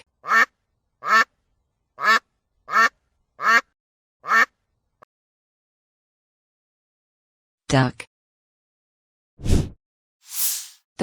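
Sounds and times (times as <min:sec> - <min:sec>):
duck quacking: 0:00.2 - 0:01.3, 0:02.0 - 0:04.5.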